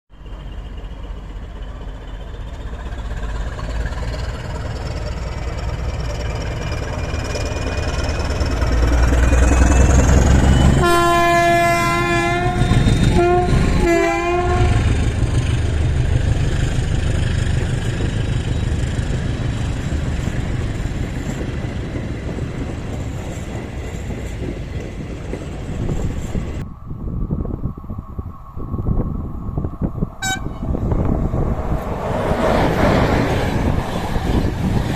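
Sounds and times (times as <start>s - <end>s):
train rumble with rising whine: 0.1s - 34.9s
train horn blasts: 10.4s - 15.0s, 30.2s - 30.8s.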